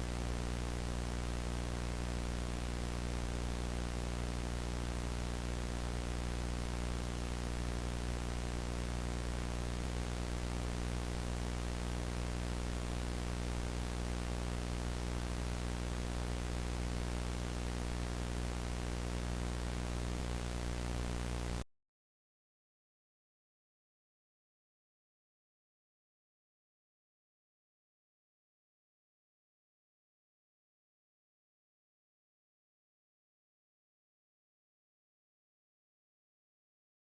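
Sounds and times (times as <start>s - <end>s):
static hiss: 0.0s - 21.6s.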